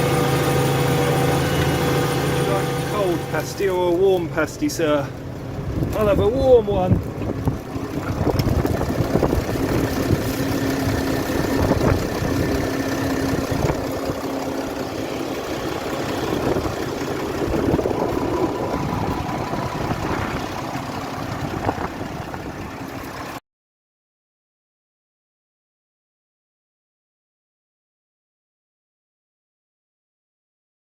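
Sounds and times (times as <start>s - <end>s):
tractor diesel engine running: 0.0s - 23.4s.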